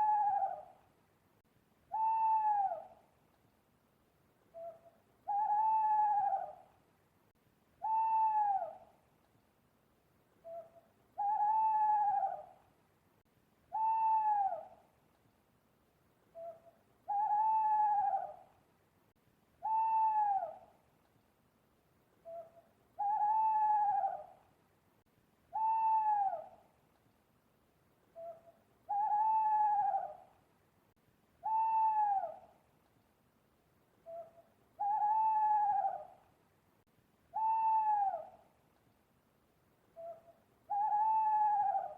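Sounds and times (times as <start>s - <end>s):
owl hooting: 0.0s - 0.8s, 1.9s - 3.0s, 4.5s - 6.7s, 7.8s - 8.9s, 10.4s - 12.6s, 13.7s - 14.8s, 16.3s - 18.5s, 19.6s - 20.8s, 22.2s - 24.4s, 25.5s - 26.7s, 28.1s - 30.3s, 31.4s - 32.6s, 34.0s - 36.3s, 37.3s - 38.5s, 39.9s - 41.9s.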